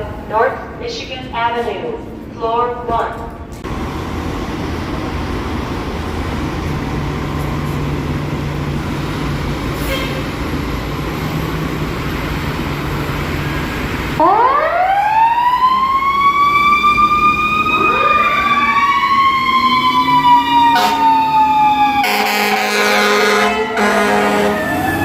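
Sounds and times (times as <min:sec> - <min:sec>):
fire siren winding up: 0:14.2 - 0:25.0.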